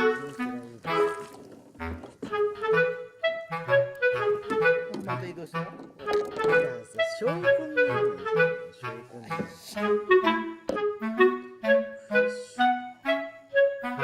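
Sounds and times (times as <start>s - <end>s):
bouncy tune with bass line: 0.0s - 14.0s.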